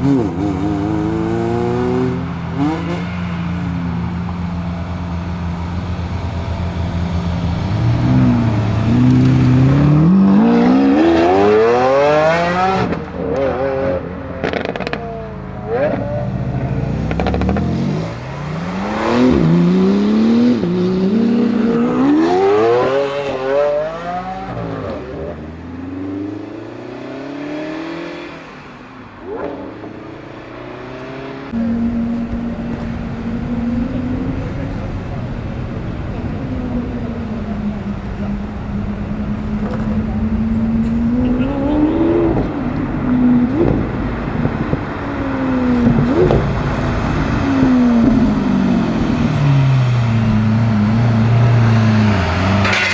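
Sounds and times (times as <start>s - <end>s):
sports car engine revving: 5.6s - 15.0s, 15.6s - 28.4s, 31.0s - 52.9s
exhaust crackles: 31.5s - 52.9s.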